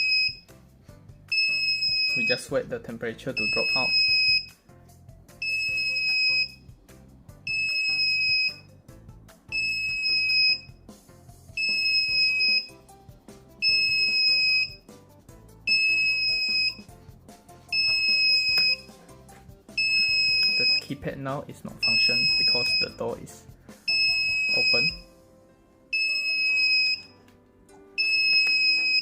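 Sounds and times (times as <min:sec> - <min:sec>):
alarm buzzer beeping: 0:01.3 - 0:02.5, 0:03.4 - 0:04.6, 0:05.4 - 0:06.6, 0:07.5 - 0:08.7, 0:09.5 - 0:10.8, 0:11.6 - 0:12.8, 0:13.6 - 0:14.8, 0:15.7 - 0:16.9, 0:17.7 - 0:18.9, 0:19.8 - 0:20.9, 0:21.8 - 0:23.0, 0:23.9 - 0:25.0, 0:25.9 - 0:27.1, 0:28.0 - 0:29.0.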